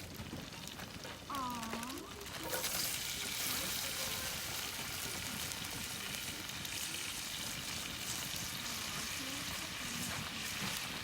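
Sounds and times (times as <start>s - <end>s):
food sizzling in a pan: 0.0s - 11.0s.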